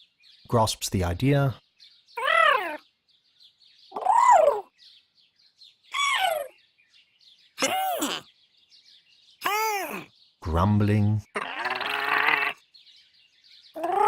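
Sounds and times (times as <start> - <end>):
robot droid chirping calls: 2.2 - 2.8.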